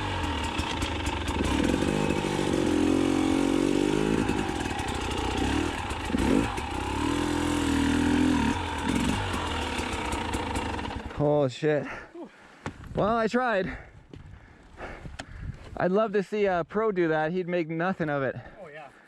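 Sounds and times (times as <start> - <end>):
dirt bike engine revving: 0.0 - 11.2.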